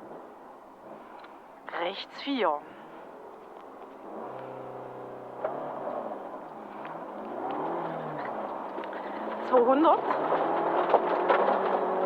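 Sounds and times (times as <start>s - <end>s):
rally car engine revving: 2.7s - 12.0s.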